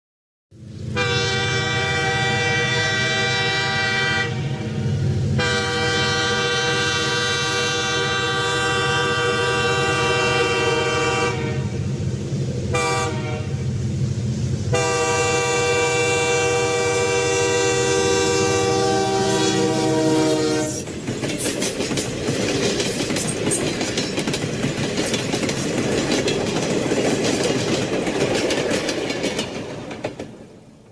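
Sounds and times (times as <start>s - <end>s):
train rumbling past: 0.5s - 30.9s
locomotive air horn blasts: 0.9s - 11.8s, 12.7s - 13.6s, 14.7s - 20.9s
wheels clattering on rails: 20.6s - 30.7s.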